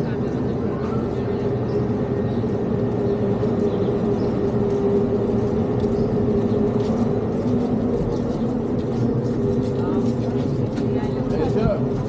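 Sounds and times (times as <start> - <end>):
steady motor hum: 0.1 - 12.0.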